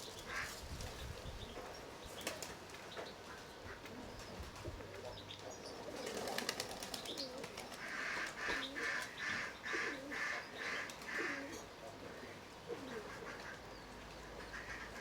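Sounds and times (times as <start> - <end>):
pigeons cooing: 3.2 - 15.0
wings clapping: 6.0 - 9.1.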